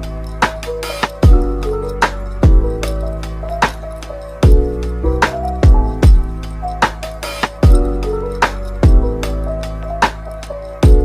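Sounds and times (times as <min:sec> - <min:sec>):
held chords: 0:00.0 - 0:11.0
kick drums: 0:01.2 - 0:01.6, 0:02.4 - 0:03.1, 0:04.4 - 0:08.1, 0:08.7 - 0:09.3.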